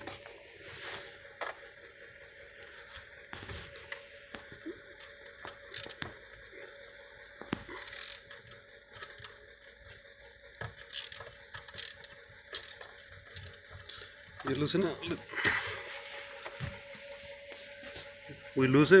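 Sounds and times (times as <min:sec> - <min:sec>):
faint steady hum: 0:00.0 - 0:19.0
hand tool clicking and rattling: 0:05.7 - 0:06.1, 0:07.6 - 0:09.3, 0:10.6 - 0:13.8.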